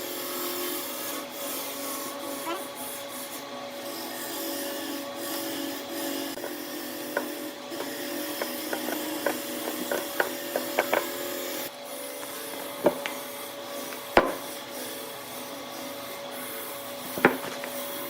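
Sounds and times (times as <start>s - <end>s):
rubbing and scraping on wood: 6.1s - 11.5s, 12.2s - 18.0s
sharp knocks: 14.2s - 14.5s, 17.2s - 17.6s.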